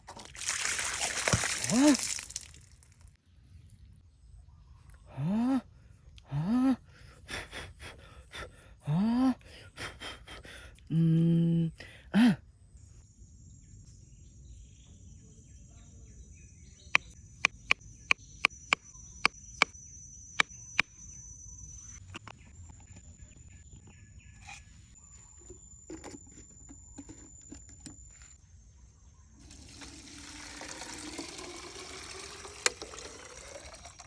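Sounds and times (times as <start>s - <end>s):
crickets chirring: 12.5s - 34.0s.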